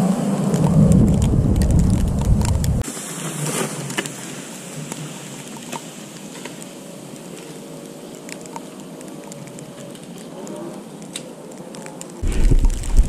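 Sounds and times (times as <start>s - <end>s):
steady hiss: 2.8s - 8.3s.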